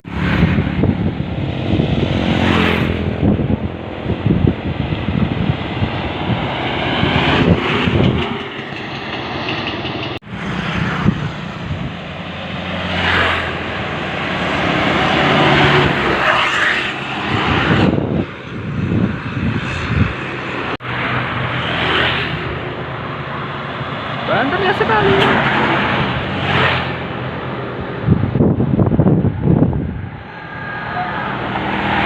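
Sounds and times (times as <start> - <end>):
bus engine passing: 0.0 - 32.0
droning air horn: 30.2 - 31.5.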